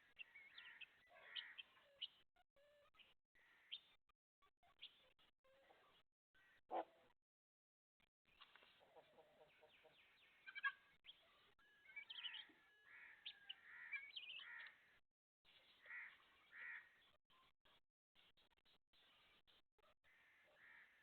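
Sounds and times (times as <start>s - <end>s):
chickens clucking: 8.8s - 10.0s.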